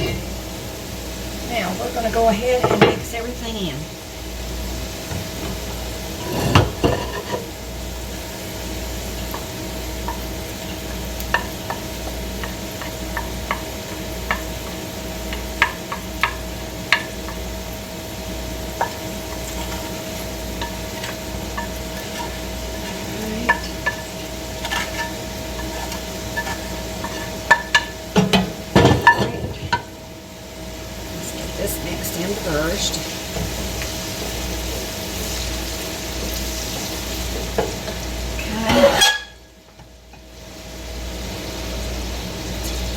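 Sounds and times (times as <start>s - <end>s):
low sizzle: 0.0s - 42.9s
spoon stirring and scraping pot: 6.2s - 7.5s, 9.3s - 17.4s, 18.7s - 29.9s, 31.2s - 39.4s.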